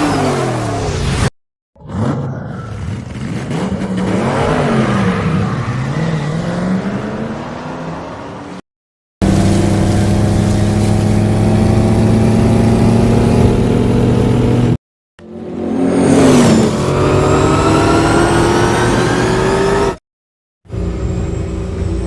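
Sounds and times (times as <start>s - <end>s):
engine accelerating: 9.2s - 20.0s
loud engine rumble: 9.2s - 20.0s, 20.7s - 22.0s.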